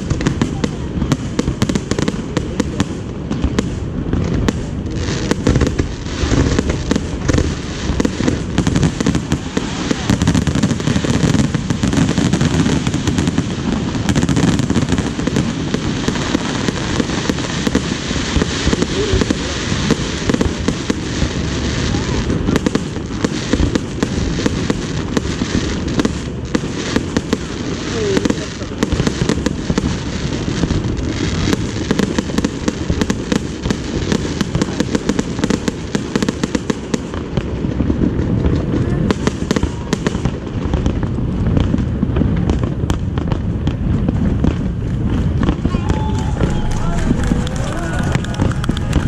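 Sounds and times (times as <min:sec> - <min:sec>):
crowd voices: 0:00.0 - 0:24.3, 0:45.1 - 0:49.0
fireworks bangs and crackles: 0:00.0 - 0:49.0.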